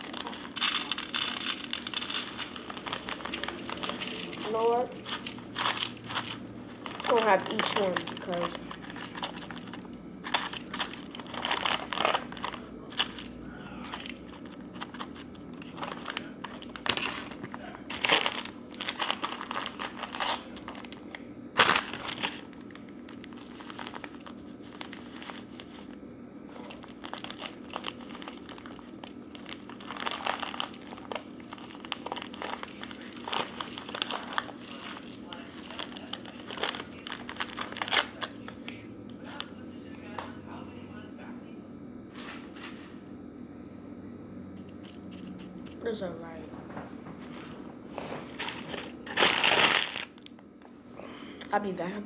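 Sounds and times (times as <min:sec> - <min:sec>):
packets crinkling and tearing: 0:00.0 - 0:39.5, 0:48.3 - 0:50.4.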